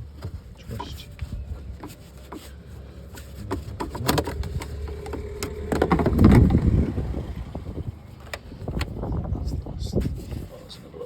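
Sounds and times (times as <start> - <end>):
plastic rubbing: 0.3 - 7.2.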